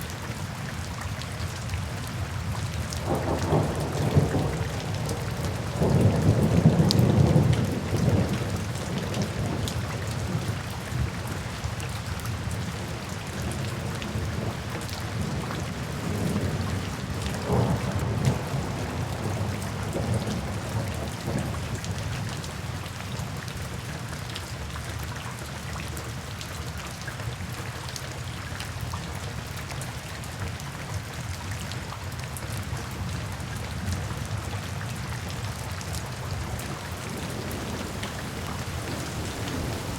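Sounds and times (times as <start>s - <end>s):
steady rain: 0.0s - 39.9s
rolling thunder: 3.0s - 10.3s, 15.2s - 21.8s, 36.5s - 39.9s.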